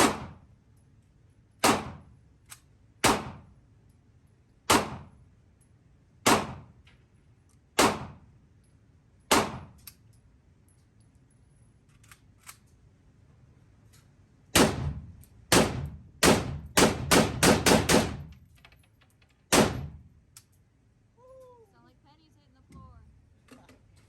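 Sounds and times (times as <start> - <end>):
rifle shots with echo: 0.0 - 0.4, 1.6 - 2.0, 3.0 - 3.5, 4.7 - 5.1, 6.3 - 6.7, 7.8 - 8.2, 9.3 - 9.7, 14.6 - 18.3, 19.5 - 20.0.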